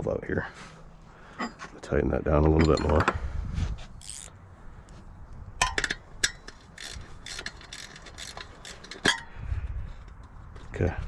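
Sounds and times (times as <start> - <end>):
metal clicks of nut tightening: 4.0 - 4.3, 5.6 - 9.2.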